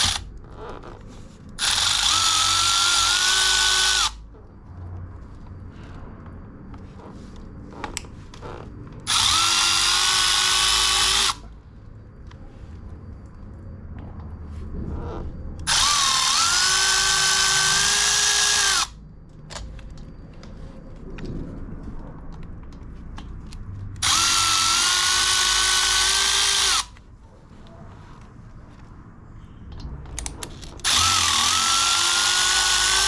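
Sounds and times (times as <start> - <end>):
power drill motor whine: 0.0 - 4.2, 7.0 - 11.5, 14.9 - 19.0, 24.0 - 27.0, 30.6 - 33.0.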